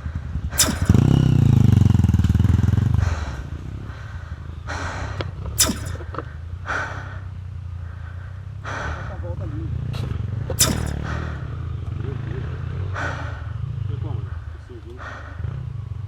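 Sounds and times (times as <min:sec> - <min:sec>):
sharp knocks: 0:00.6 - 0:01.1, 0:05.6 - 0:06.0, 0:10.6 - 0:11.1
motorcycle engine revving and idling: 0:09.5 - 0:14.3, 0:15.3 - 0:16.0.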